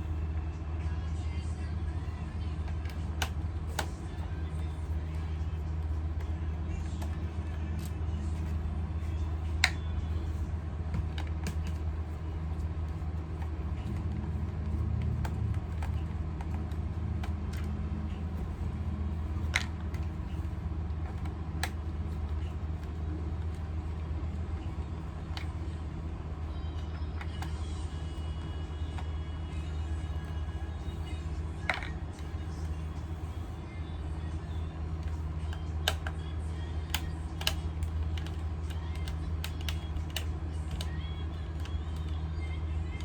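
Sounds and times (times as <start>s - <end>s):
steady low rumble: 0.0s - 43.0s.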